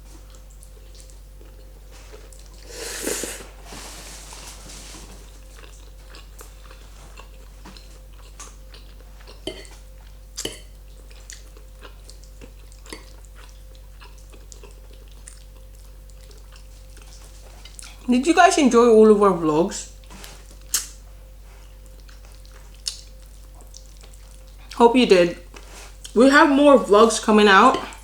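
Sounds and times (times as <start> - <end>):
low electrical hum: 0.0 - 28.0
chewing and mouth noises: 0.2 - 2.7, 5.4 - 18.1, 20.0 - 24.8.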